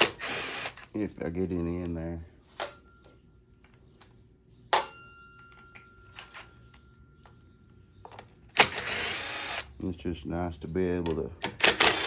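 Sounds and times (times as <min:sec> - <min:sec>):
tools clicking and knocking: 0:10.6 - 0:12.0.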